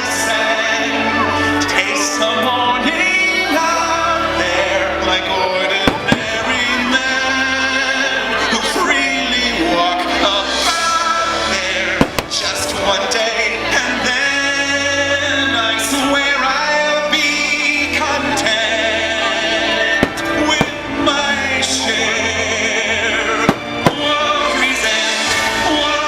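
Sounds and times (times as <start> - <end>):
music with singing: 0.0 - 26.0
firework bangs: 5.8 - 6.8, 12.0 - 12.8, 19.9 - 21.4, 23.4 - 24.9.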